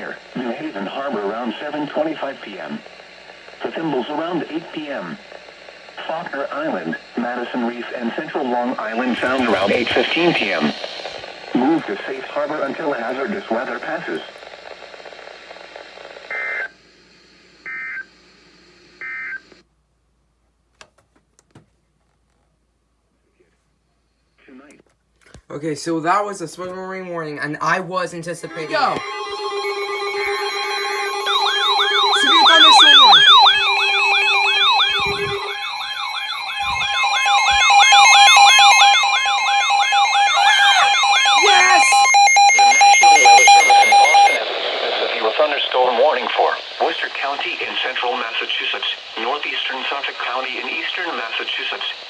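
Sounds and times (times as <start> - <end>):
radio background hiss: 0.0 - 19.6, 24.4 - 52.0
buzzy digital tone bursts: 8.9 - 12.2, 28.4 - 44.4
warbling siren sweep: 28.4 - 44.4.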